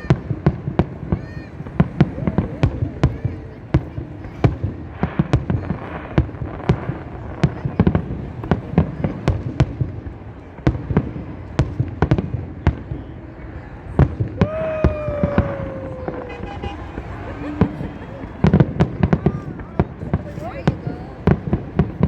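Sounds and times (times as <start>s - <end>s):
fireworks bangs and pops: 0.0s - 22.0s
long falling tone: 14.4s - 18.3s.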